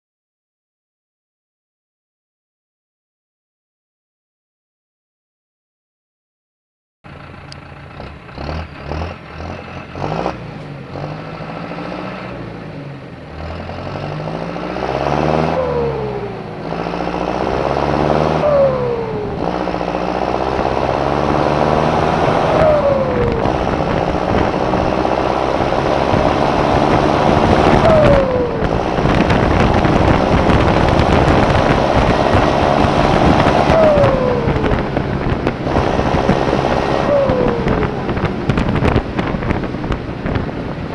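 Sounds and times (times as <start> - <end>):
tractor diesel engine revving: 7.1 - 40.9
turbocharger whistling: 13.4 - 39.6.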